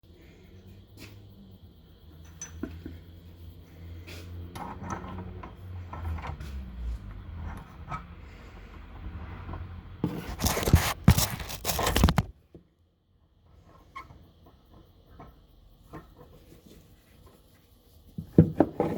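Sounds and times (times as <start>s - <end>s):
scraping and rubbing handling noise: 9.5s - 12.3s.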